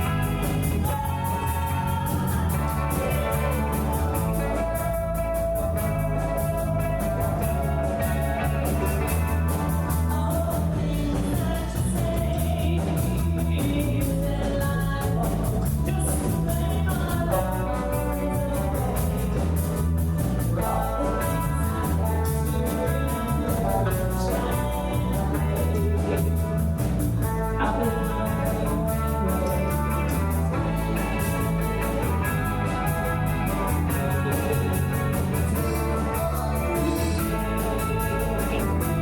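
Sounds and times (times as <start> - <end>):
bass guitar: 0.0 - 39.0
drums with hi-hat beat: 0.0 - 39.0
guitar: 0.0 - 39.0.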